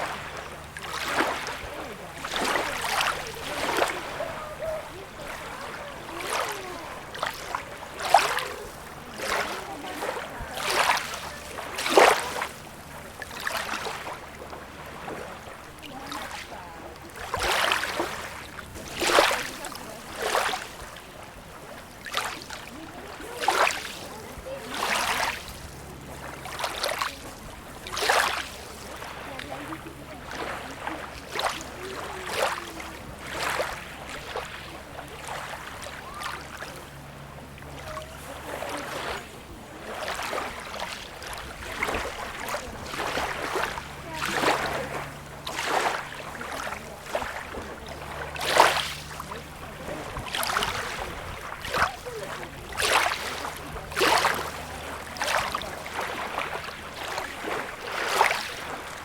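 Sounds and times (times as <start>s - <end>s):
small waves lapping and splashing: 0.0s - 59.0s.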